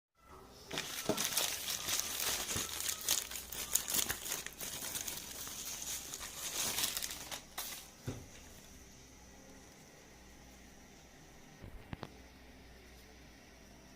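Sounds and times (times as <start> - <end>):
packaging crinkling and rustling: 0.7 - 8.0.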